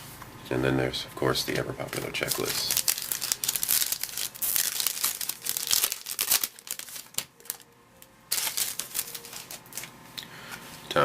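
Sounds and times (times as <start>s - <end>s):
foil wrapper crinkling: 1.5s - 7.7s, 8.3s - 9.9s.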